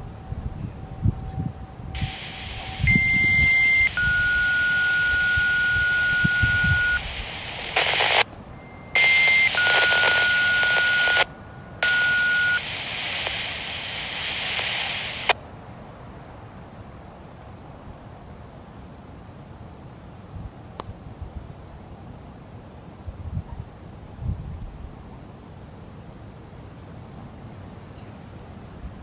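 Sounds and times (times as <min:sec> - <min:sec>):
radio hiss: 0:02.0 - 0:08.3, 0:09.0 - 0:15.4
two-tone radio page: 0:02.0 - 0:08.3, 0:09.0 - 0:15.4
radio click: 0:02.0 - 0:08.4, 0:09.0 - 0:15.4.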